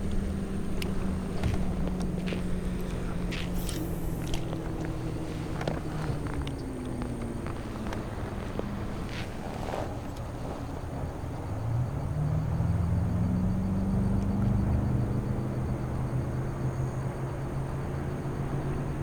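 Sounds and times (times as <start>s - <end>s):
distant engine droning: 0.0s - 19.0s.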